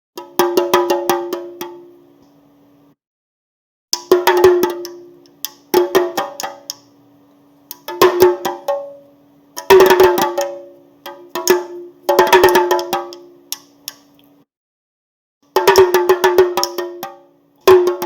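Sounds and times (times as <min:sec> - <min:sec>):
faint steady hum: 0:01.0 - 0:03.0, 0:04.3 - 0:14.4
drum struck in quick bursts: 0:07.8 - 0:08.9.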